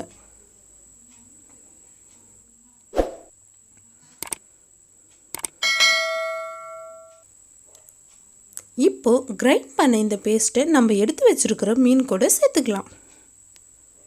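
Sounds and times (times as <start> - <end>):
ringing utensil strike: 5.6 - 7.2.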